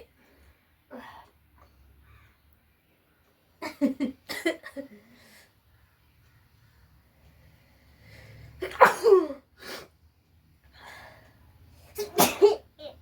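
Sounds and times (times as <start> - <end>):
drawn-in breath: 7.4 - 8.6.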